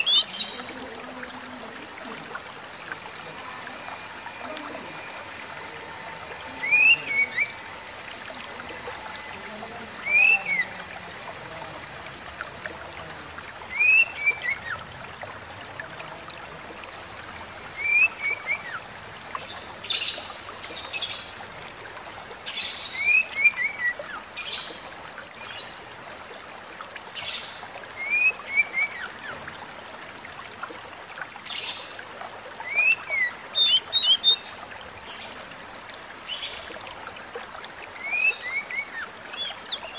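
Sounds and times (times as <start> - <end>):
running water: 0.0 - 39.9
bird whistling phrase: 6.5 - 7.7, 10.0 - 10.8, 13.7 - 14.8, 17.8 - 18.8, 28.0 - 29.1, 38.0 - 39.8.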